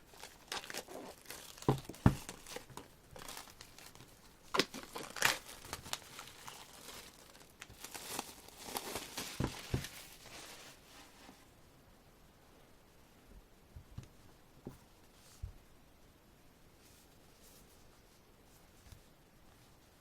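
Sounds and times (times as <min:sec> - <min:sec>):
paper and plastic crinkling: 0:00.0 - 0:11.4
album case knocks: 0:01.6 - 0:02.4, 0:09.3 - 0:10.0.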